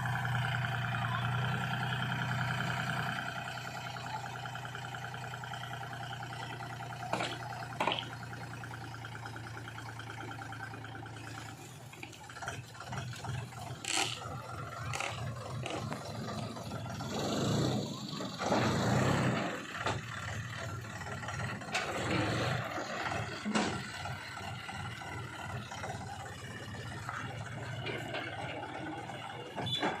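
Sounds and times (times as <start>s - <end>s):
heavy diesel machinery running: 0.0s - 30.0s
metal clanks and knocks: 7.0s - 8.3s.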